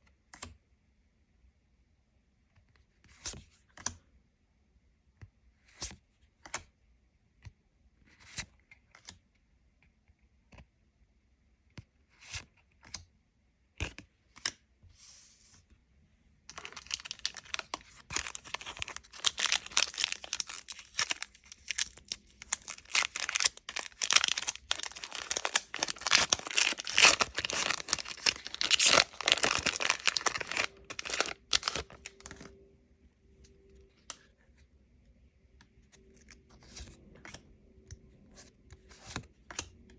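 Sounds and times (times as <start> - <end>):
plastic wrapper tearing and crinkling: 16.5 - 32.5.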